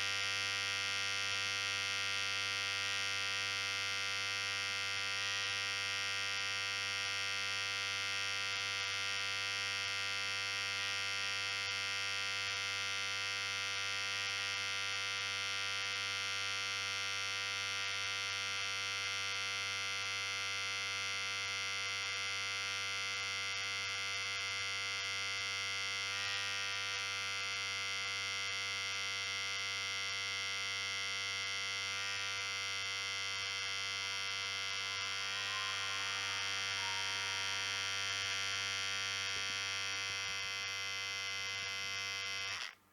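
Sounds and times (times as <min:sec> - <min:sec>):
electric hair clipper buzzing: 0:00.0 - 0:42.8.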